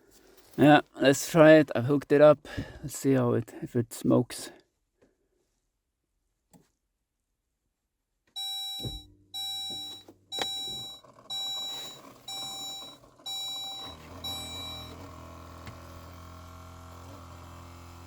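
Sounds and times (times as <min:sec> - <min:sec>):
warning chime beeping: 0:08.4 - 0:15.0
fan humming: 0:08.8 - 0:18.0.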